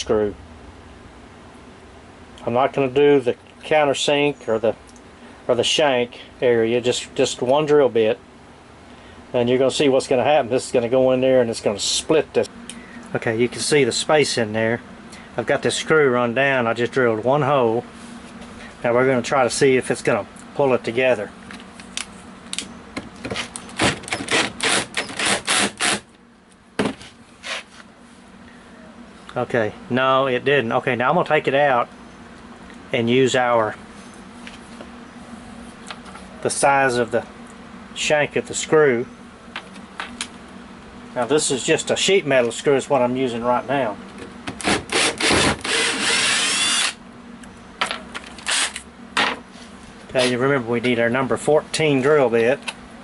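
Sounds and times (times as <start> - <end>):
power drill driving screw into wood: 23.8 - 26.0, 44.5 - 47.0, 48.4 - 48.8.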